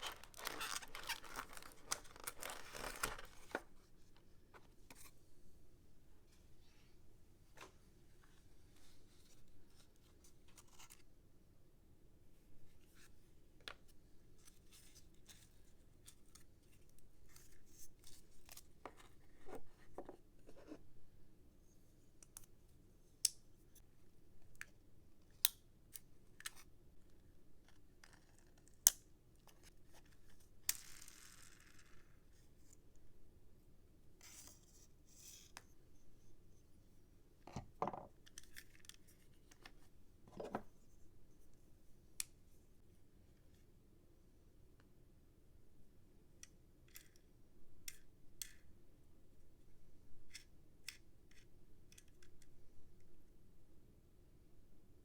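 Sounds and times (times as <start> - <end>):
packaging clicks and snips: 0.0 - 3.6
packaging tearing rustle: 0.0 - 3.7.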